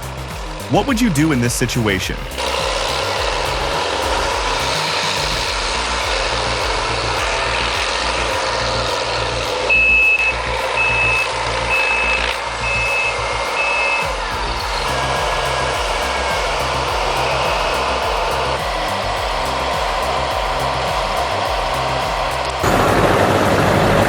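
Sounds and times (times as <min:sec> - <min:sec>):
backup alarm beeping: 0:09.7 - 0:14.0
diesel engines under load: 0:14.8 - 0:24.0.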